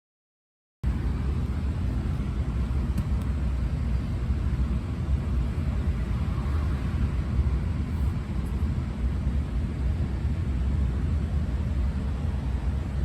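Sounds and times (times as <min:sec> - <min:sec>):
vehicle road and engine rumble: 0:00.8 - 0:13.0.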